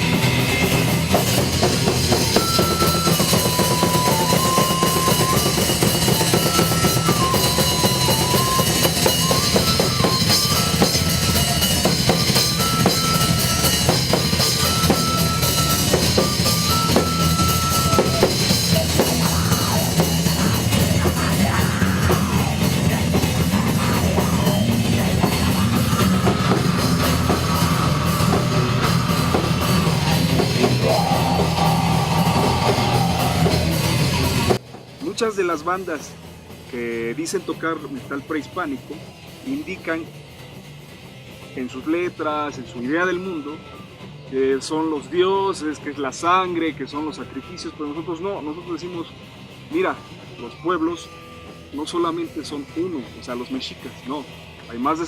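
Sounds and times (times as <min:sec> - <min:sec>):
high melody line: 0:00.0 - 0:34.6
fast drum kit with bass drum: 0:00.0 - 0:55.0
heavy metal music: 0:00.0 - 0:55.0.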